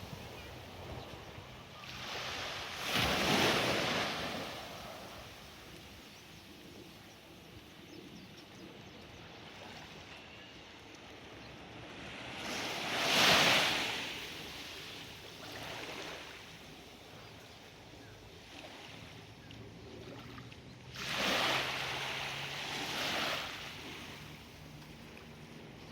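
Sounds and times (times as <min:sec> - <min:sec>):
surf washing onto beach: 0:02.0 - 0:05.8.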